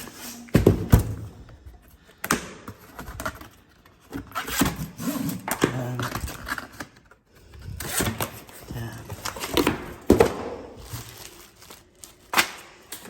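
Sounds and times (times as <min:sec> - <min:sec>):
rustling packaging: 0:02.8 - 0:13.0.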